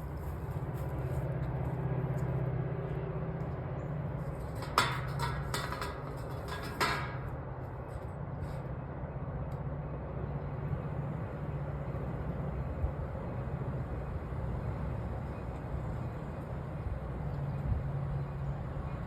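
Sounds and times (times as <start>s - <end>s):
metal hardware clicking and clanking: 4.4s - 7.4s.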